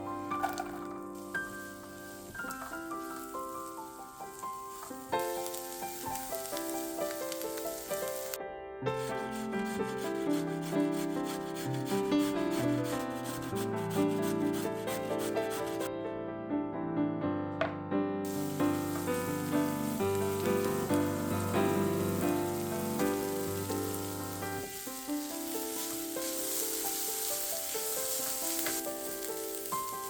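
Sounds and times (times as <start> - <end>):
rasping scraping strokes: 9.0 - 15.9.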